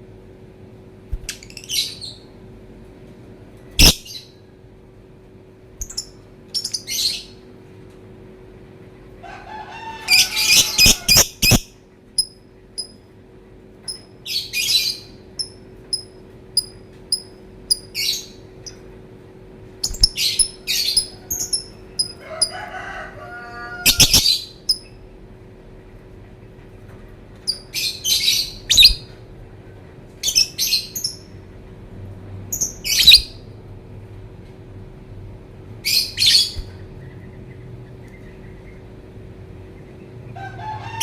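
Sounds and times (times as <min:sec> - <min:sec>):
bird chirping shrilly: 0:10.2 - 0:11.7.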